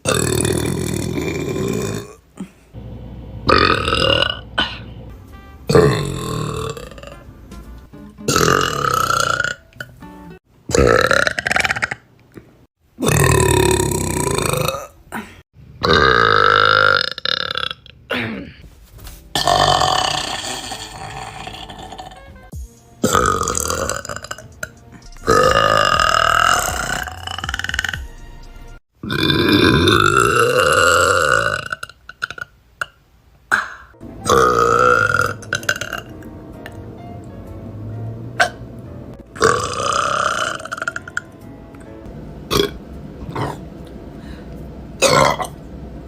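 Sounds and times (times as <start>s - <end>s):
young women burping: 3.5s - 5.0s.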